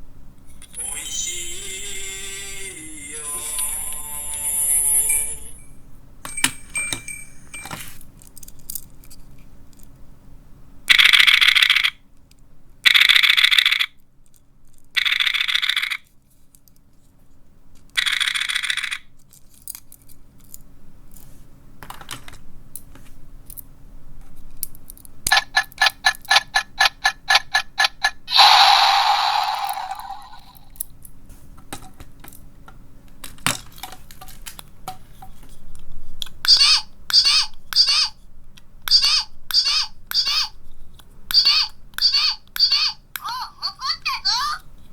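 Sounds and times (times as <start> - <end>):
electronic toy sound effects: 0.6 - 5.7, 28.3 - 30.7, 36.5 - 38.1, 41.3 - 44.6
rapid ringing pulse: 0.8 - 3.5
small toy clicks: 10.9 - 12.0, 12.9 - 13.9, 15.0 - 16.0, 18.0 - 19.0.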